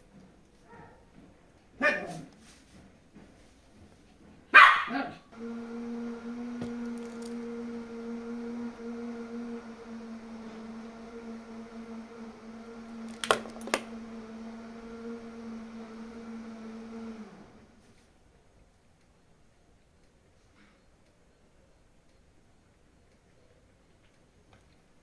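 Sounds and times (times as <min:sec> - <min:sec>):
small electric motor humming: 0:05.3 - 0:17.9
sharp clicks: 0:09.7 - 0:15.6.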